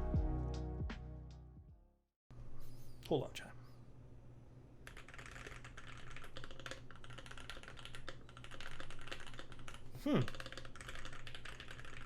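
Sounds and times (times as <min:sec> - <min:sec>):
mechanical keyboard typing: 0:04.8 - 0:12.0.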